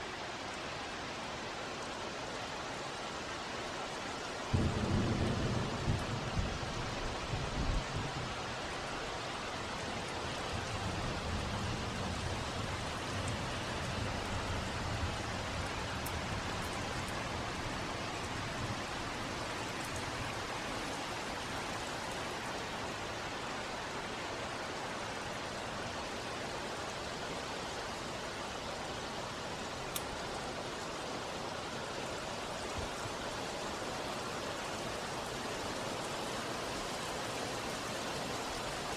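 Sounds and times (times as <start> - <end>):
heavy rain falling: 0.1 - 38.9
thunder roll: 4.5 - 8.3.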